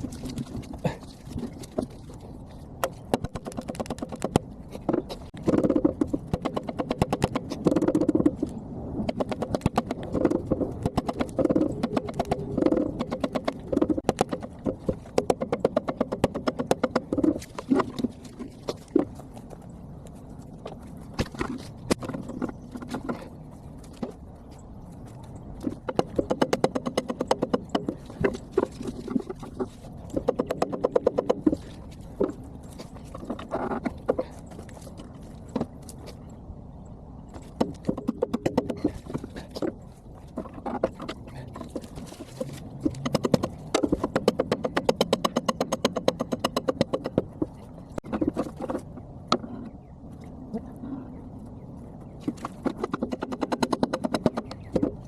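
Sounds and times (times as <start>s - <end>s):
metallic clicks and knocks: 25.6s - 34.4s, 40.4s - 49.7s, 52.3s - 55.0s.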